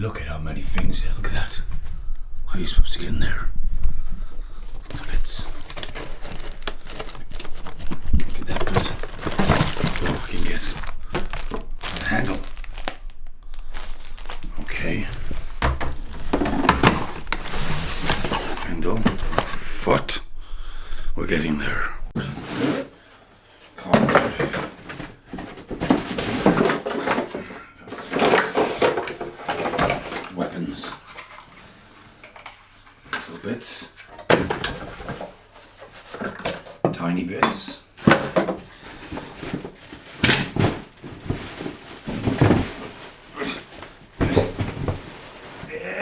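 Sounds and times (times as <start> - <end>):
cardboard rustling: 4.8 - 19.9, 22.2 - 23.0, 23.8 - 31.6, 34.0 - 36.8, 38.0 - 45.8
plastic parts knocking: 15.3 - 19.5, 36.1 - 42.8.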